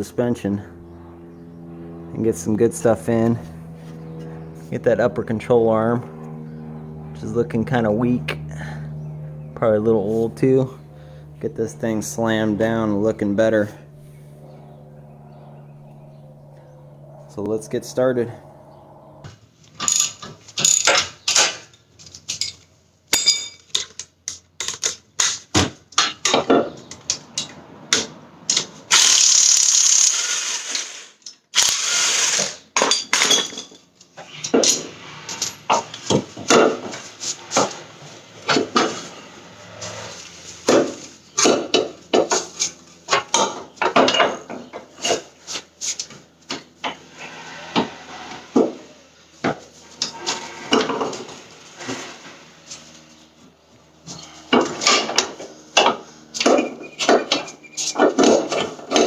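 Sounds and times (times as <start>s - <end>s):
metal tools clanking: 19.8s - 24.0s, 32.8s - 37.8s, 40.7s - 45.3s.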